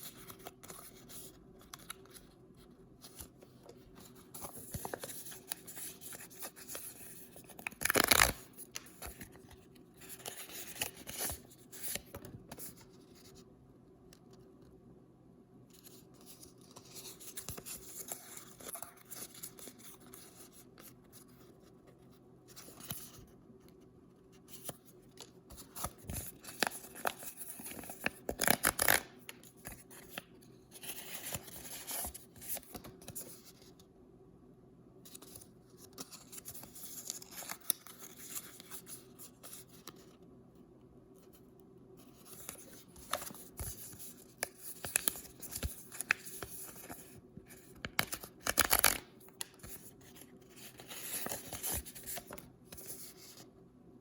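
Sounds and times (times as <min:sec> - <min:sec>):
paper packaging tearing: 0:07.8 - 0:08.4.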